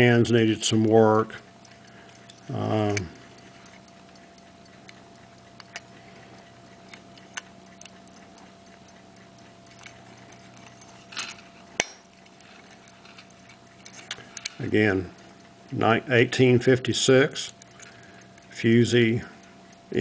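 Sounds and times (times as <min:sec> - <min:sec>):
low steady hum: 0:00.0 - 0:20.0
pocket watch ticking: 0:00.0 - 0:20.0.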